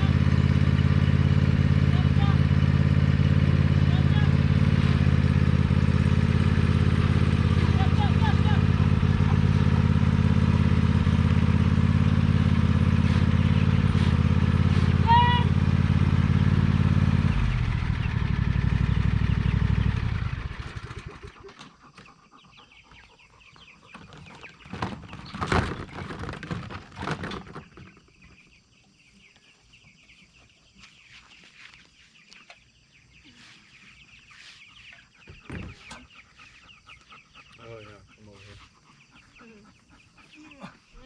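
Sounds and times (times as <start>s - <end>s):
riding lawnmower engine running: 0.0s - 41.0s
chickens clucking: 5.2s - 15.0s, 20.6s - 41.0s.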